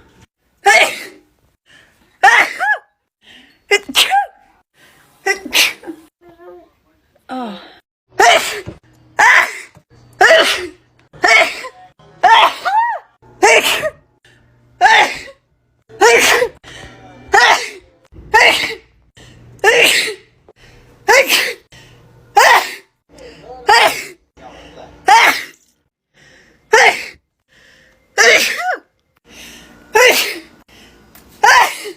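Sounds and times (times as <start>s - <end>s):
woman sneezing: 3.7s - 4.4s, 5.2s - 6.0s, 8.2s - 9.6s, 10.2s - 14.0s, 16.0s - 16.6s, 17.3s - 18.8s, 19.6s - 20.2s, 21.1s - 21.6s, 28.2s - 28.8s, 29.9s - 30.5s, 31.4s - 31.9s.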